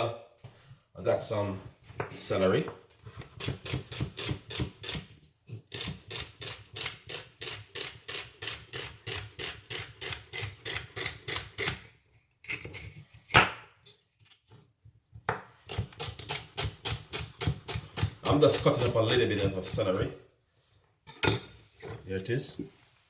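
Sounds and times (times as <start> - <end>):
knife chopping on a board: 3.3 - 5.1, 15.2 - 19.9.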